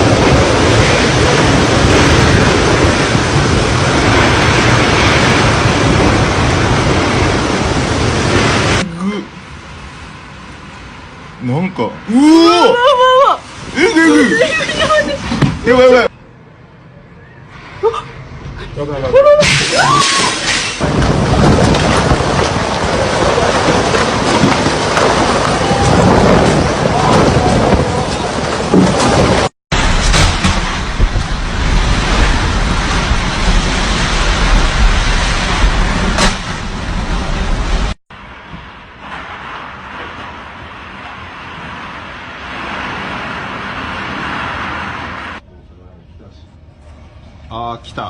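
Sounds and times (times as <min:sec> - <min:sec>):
wind buffeting microphone: 0:00.0 - 0:08.8, 0:19.5 - 0:45.4.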